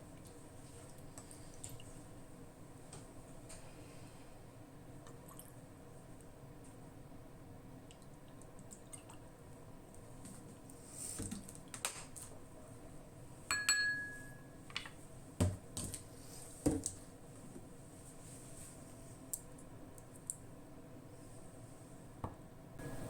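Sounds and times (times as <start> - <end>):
ringing clink: 13.5 - 14.5.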